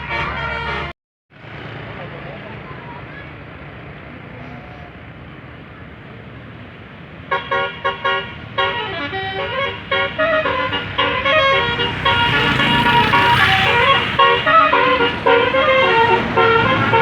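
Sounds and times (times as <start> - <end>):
multi-tone bus horn tune: 0.0 - 1.0, 7.2 - 17.0
vehicle rumble: 0.0 - 17.0.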